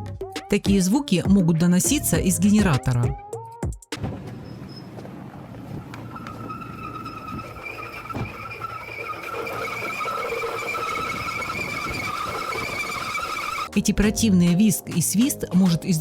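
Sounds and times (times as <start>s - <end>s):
drive belt squealing: 4.3s - 13.8s.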